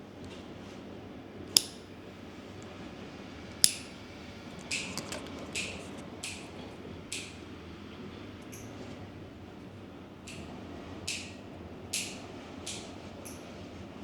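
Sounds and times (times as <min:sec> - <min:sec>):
nail clippers snipping: 0:01.6 - 0:01.9, 0:03.6 - 0:03.9.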